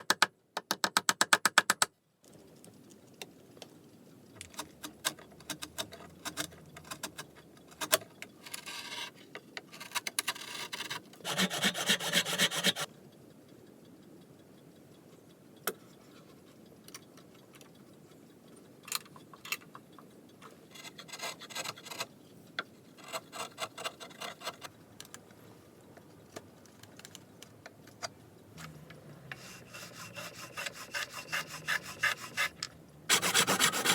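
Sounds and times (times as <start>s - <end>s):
hand tool rasping wood: 11.2s - 12.9s, 29.3s - 33.9s.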